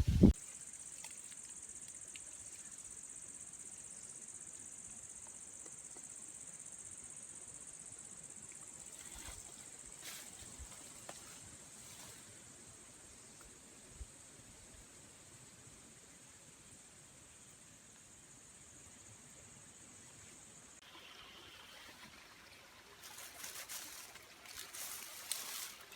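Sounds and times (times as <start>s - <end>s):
crickets trilling: 0.0s - 14.9s, 23.0s - 25.9s.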